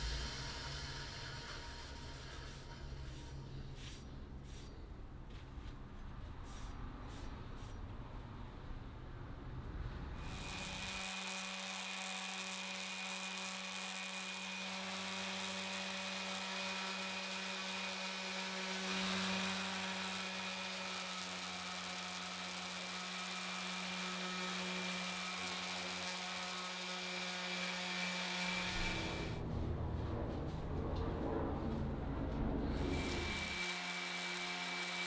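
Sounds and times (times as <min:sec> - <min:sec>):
small electric power tool running: 0:00.0 - 0:04.1, 0:10.2 - 0:29.4, 0:32.8 - 0:35.0.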